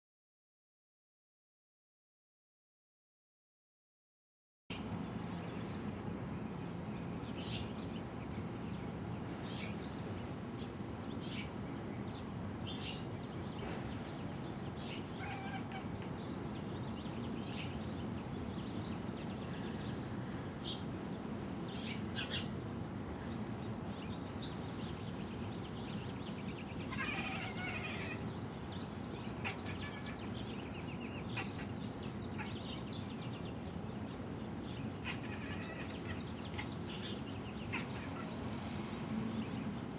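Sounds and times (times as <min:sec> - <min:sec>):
low background hum: 0:04.7 - 0:39.9
cat chirping and chattering: 0:13.9 - 0:18.0, 0:24.9 - 0:38.9.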